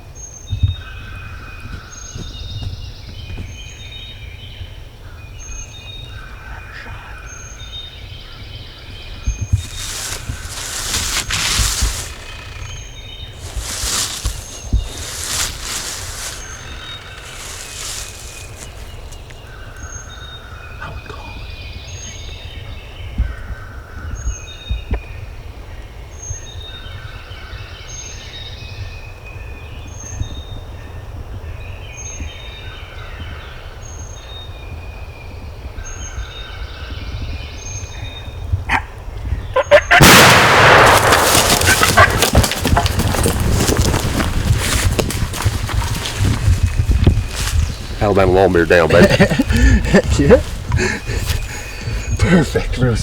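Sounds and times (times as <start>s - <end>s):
songbirds singing: 0.0s - 53.0s
loud rustling: 9.3s - 19.3s, 39.9s - 53.0s
shotgun blast: 40.0s - 42.4s.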